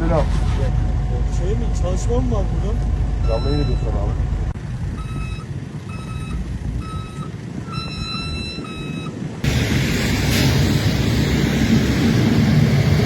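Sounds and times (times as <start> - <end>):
low engine rumble: 0.0 - 13.0
reversing alarm beeping: 2.3 - 4.2, 4.9 - 9.3
loud steady rushing noise: 8.6 - 13.0.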